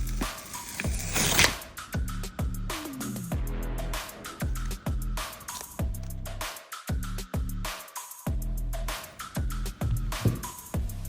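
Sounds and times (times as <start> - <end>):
electronic music with deep bass: 2.0 - 7.6.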